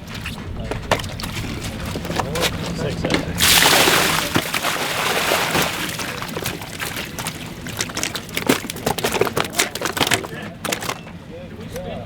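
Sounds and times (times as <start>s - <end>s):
water pouring and sloshing: 0.0s - 11.2s
clicks and crinkles: 6.0s - 11.2s.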